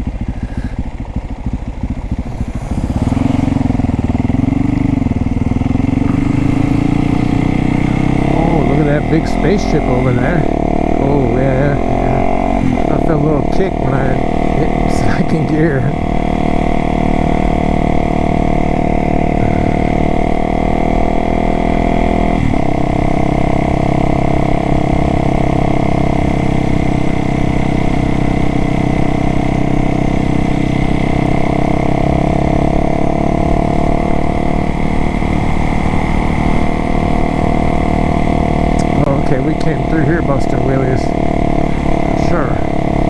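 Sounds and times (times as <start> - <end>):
motorcycle engine running: 0.0 - 43.0.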